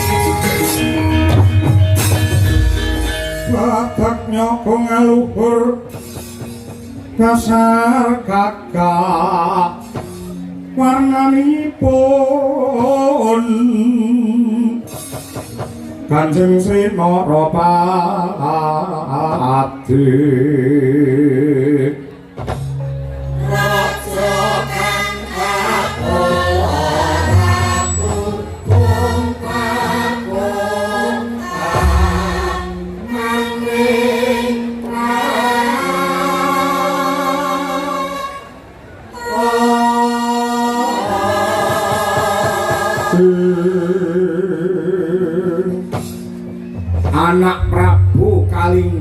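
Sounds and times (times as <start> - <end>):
ringing gamelan tones: 23.2 - 33.4
voices singing together: 23.4 - 45.9.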